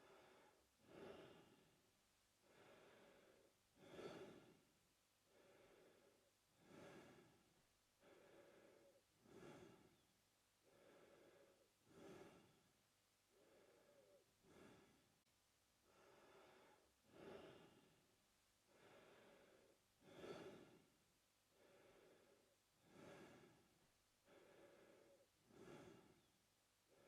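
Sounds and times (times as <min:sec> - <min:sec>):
man breathing through mouth: 0:02.4 - 0:04.6, 0:05.3 - 0:07.4, 0:08.0 - 0:10.0, 0:10.6 - 0:12.6, 0:13.3 - 0:15.0, 0:15.9 - 0:17.9, 0:18.7 - 0:20.9, 0:21.6 - 0:26.2.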